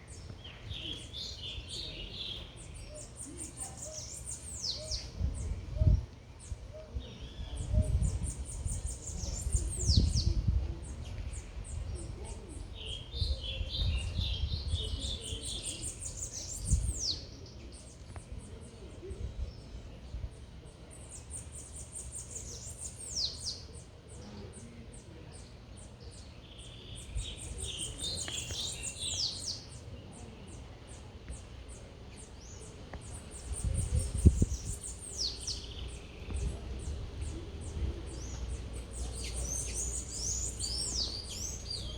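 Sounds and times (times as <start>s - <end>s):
low city rumble: 0.0s - 41.9s
songbird singing: 0.0s - 41.9s
low chattering bird call: 12.5s - 41.9s.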